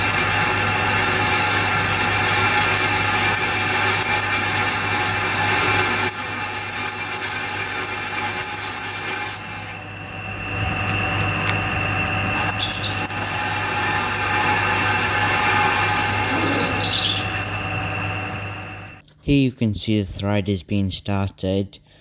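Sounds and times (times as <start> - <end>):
drill bit squealing in metal: 0.0 - 18.9
milling machine running: 0.0 - 19.0.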